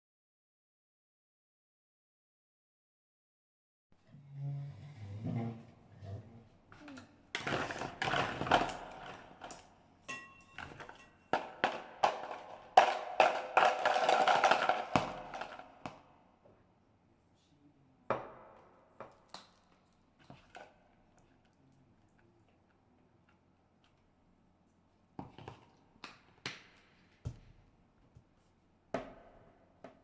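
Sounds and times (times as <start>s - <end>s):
kitchen clicks and knocks: 6.8s - 15.6s.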